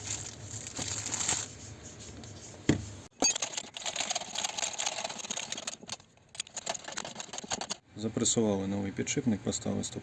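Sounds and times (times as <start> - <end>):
metallic clicks and rattles: 3.2 - 7.8.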